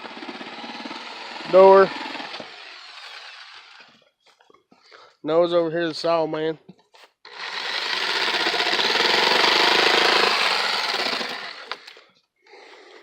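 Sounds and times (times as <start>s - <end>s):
power saw cutting wood: 0.0s - 4.0s, 7.3s - 12.0s.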